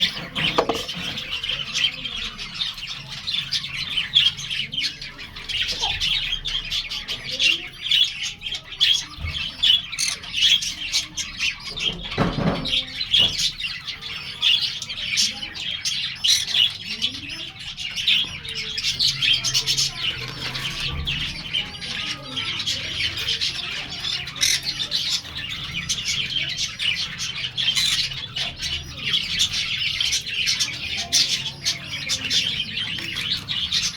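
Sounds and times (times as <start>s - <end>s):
budgerigar chicks squawking: 0.0s - 33.9s.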